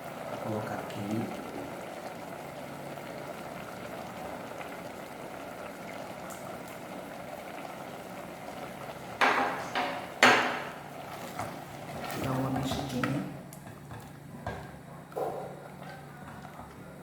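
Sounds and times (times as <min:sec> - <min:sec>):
pot simmering with bubbling hiss: 0:00.0 - 0:17.0
cookware clattering: 0:09.2 - 0:10.8.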